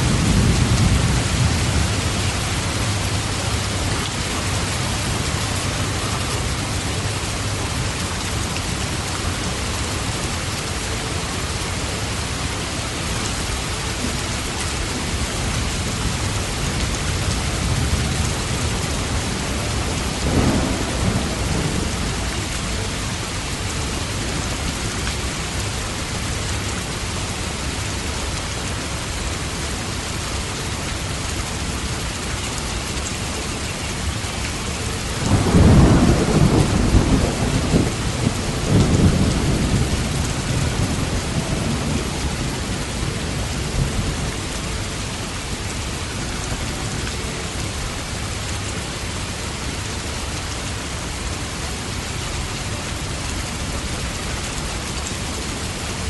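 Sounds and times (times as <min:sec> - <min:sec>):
thunder rumbling: 0:00.0 - 0:08.0, 0:15.1 - 0:24.7, 0:35.1 - 0:45.8
steady rain falling: 0:00.0 - 0:56.0.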